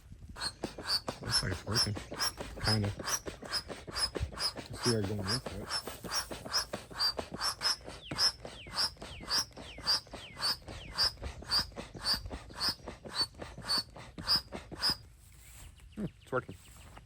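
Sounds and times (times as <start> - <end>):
pump squeaking: 0.0 - 15.0
air pump puffing: 0.0 - 15.1.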